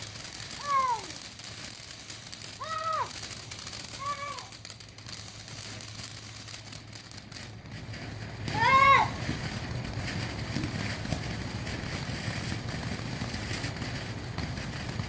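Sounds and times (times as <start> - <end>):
fireworks hissing and crackling: 0.0 - 15.0
child's wordless ooh calls: 0.5 - 1.2, 2.6 - 3.2, 4.0 - 4.6, 8.5 - 9.2.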